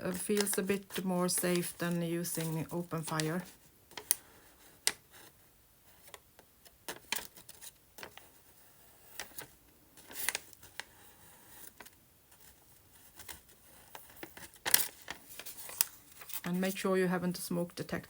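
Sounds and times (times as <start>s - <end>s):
paper rustle: 0.0s - 16.9s
paper clicks and taps: 0.1s - 4.2s.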